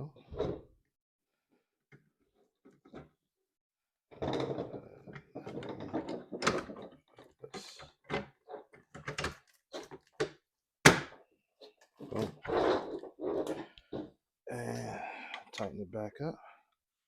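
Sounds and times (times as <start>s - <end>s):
plastic parts clicking and rattling: 4.4s - 10.4s.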